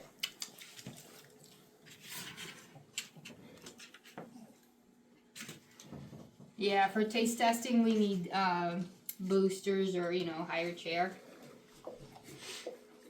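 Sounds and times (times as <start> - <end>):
dogs eating: 0.0 - 4.7.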